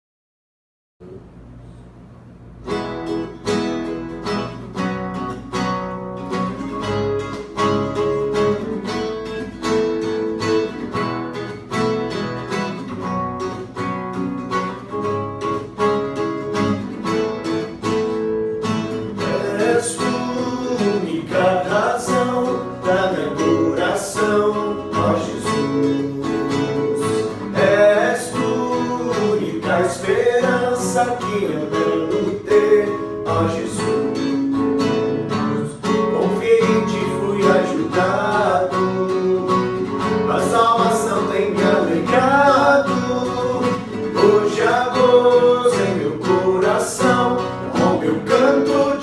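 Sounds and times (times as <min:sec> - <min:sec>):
acoustic guitar strumming: 0:02.6 - 0:49.0
person singing: 0:19.2 - 0:34.5, 0:35.6 - 0:49.0.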